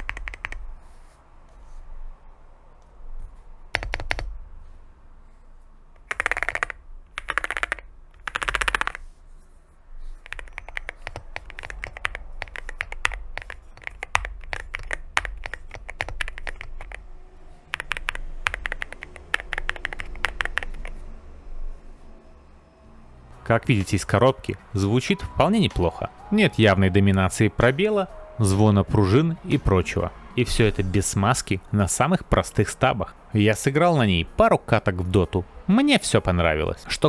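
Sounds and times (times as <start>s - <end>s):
mechanical keyboard typing: 0.0s - 0.9s, 3.6s - 4.5s, 6.0s - 9.1s, 10.0s - 21.1s, 23.5s - 26.0s.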